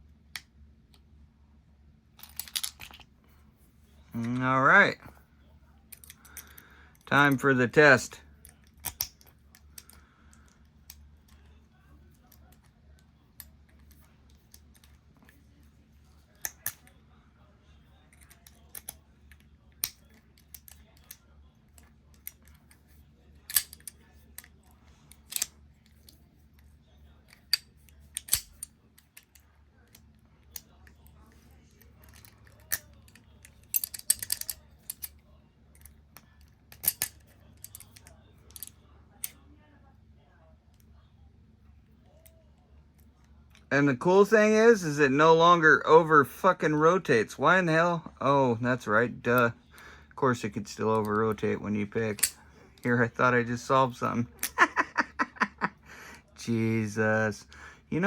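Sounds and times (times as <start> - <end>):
faint low hum: 0.0 - 58.0
padlock clicking: 8.6 - 9.9, 23.5 - 24.5, 27.3 - 29.4, 33.7 - 35.1, 36.7 - 38.7, 52.2 - 52.4.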